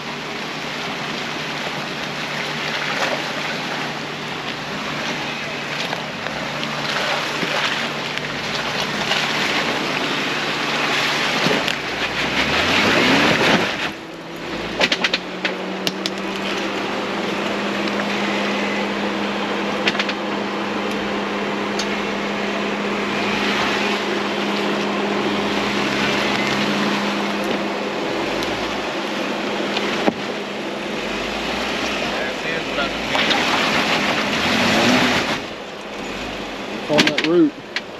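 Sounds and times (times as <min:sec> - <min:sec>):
vehicle engine running: 0:00.0 - 0:37.9.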